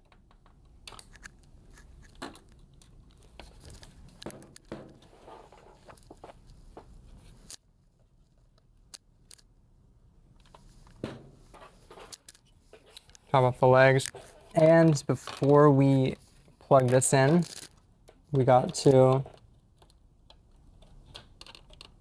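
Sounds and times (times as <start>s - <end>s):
rustling handling noise: 1.0s - 8.6s, 10.4s - 19.6s.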